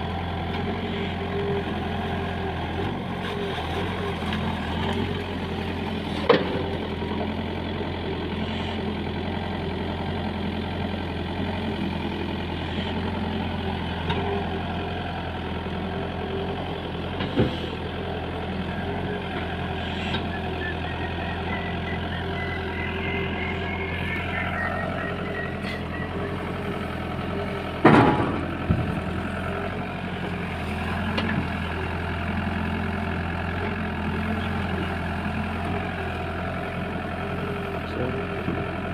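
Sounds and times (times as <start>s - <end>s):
heavy diesel engine running: 0.0s - 38.9s
faint high whine: 20.8s - 27.4s.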